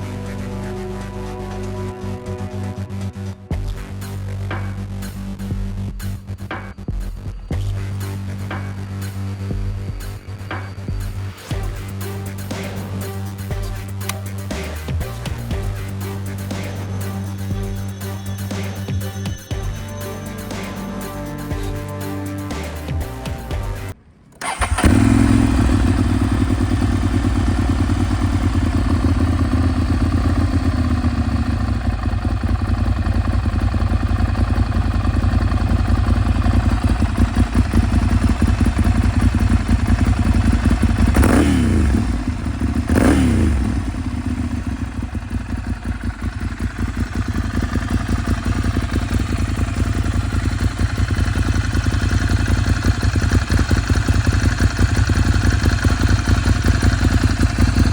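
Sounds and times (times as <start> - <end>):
motorcycle throttle blips: 24.3 - 57.9
motorcycle engine idling: 24.4 - 57.9.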